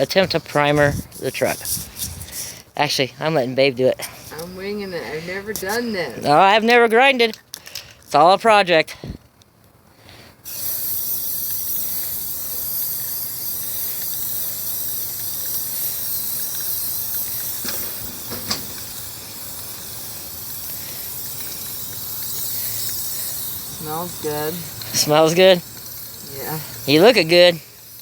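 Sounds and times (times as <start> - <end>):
spray paint hissing: 0.6 - 2.6, 4.1 - 6.0, 10.4 - 28.0.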